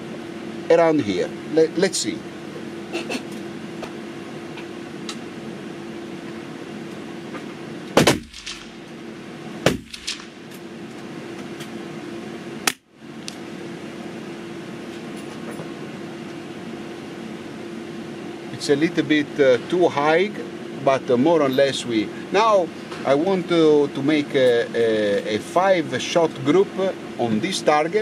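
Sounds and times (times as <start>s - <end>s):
steady hum: 0.0s - 28.0s
rifle shot: 8.0s - 8.9s, 9.7s - 10.5s.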